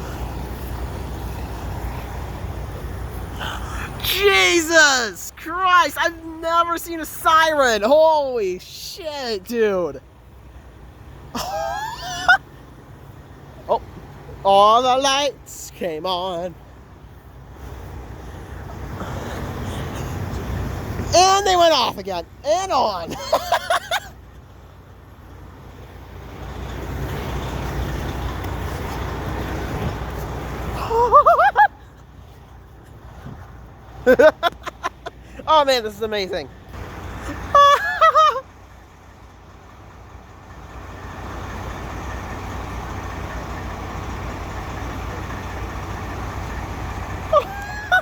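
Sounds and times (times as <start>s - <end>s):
road vehicle rumble: 0.0s - 48.0s
person speaking: 3.3s - 10.0s, 13.7s - 16.6s, 21.0s - 23.7s, 35.3s - 36.6s.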